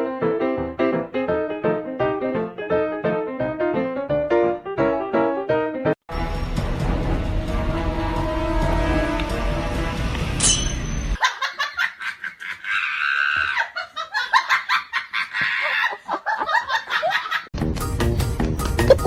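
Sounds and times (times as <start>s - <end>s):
background music: 0.0s - 11.1s, 17.6s - 19.0s
high-pitched laughter: 11.2s - 17.5s, 18.8s - 19.0s.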